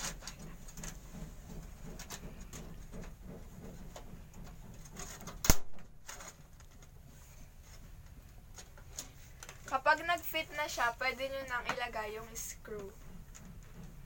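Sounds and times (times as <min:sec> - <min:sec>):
sharp loud click: 0:05.4 - 0:05.9.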